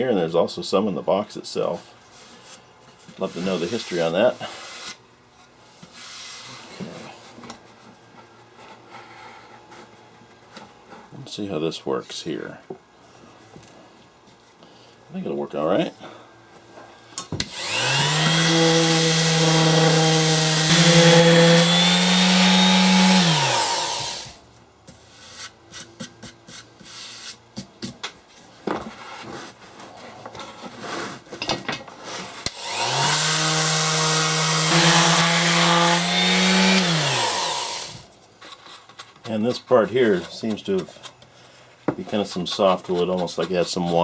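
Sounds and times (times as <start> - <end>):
electric sander whine: 17.4 - 24.4, 32.6 - 38.0
light knocks and scraping: 38.1 - 44.0.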